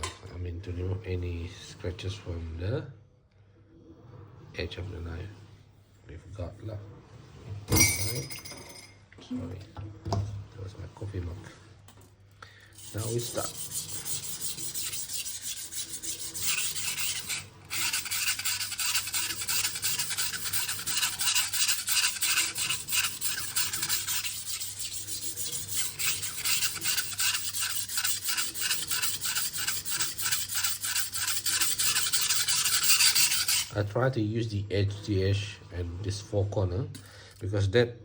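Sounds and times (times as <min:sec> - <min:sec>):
knife scraping on sharpening stone: 0:12.7 - 0:33.8.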